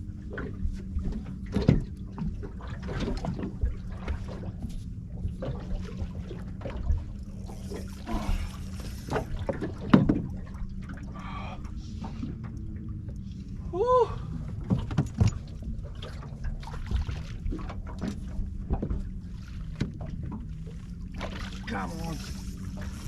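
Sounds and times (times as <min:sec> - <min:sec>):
steady low hum: 0:00.0 - 0:23.0
water sloshing and splashing: 0:00.0 - 0:23.0
knocks on small boat: 0:01.1 - 0:04.3, 0:09.2 - 0:10.3, 0:14.6 - 0:15.7, 0:19.7 - 0:20.3.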